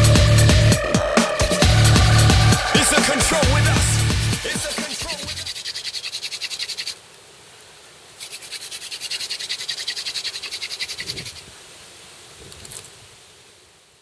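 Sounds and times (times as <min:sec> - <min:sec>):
high-pitched pulsed chirping: 0:00.0 - 0:07.0, 0:08.2 - 0:11.4.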